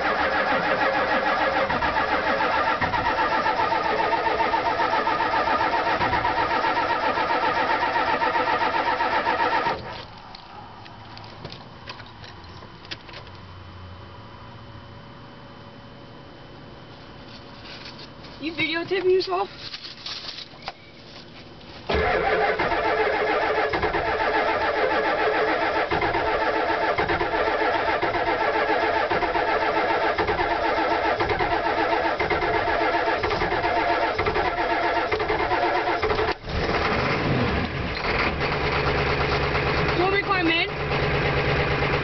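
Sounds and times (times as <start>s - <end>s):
diesel engine cranking on starter: 0.0s - 10.1s, 21.9s - 42.0s
diesel engine idling: 0.0s - 10.9s, 21.9s - 42.0s.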